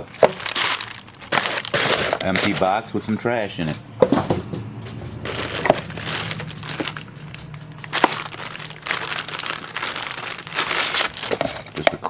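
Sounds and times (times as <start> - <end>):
paper and plastic crinkling: 0.0 - 12.0
clicks and knocks of parts: 4.0 - 12.0.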